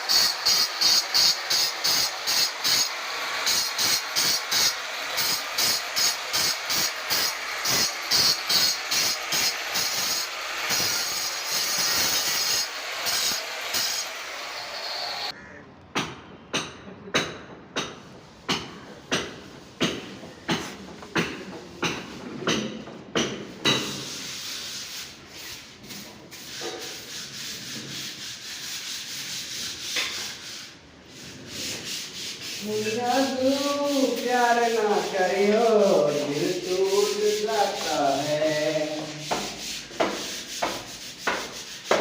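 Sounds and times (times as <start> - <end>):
hand rubbing on hard surface: 23.5 - 42.0.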